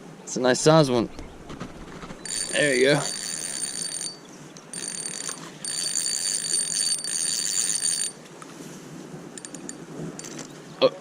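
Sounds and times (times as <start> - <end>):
fishing reel gear whirring: 2.2 - 8.2, 9.4 - 10.4.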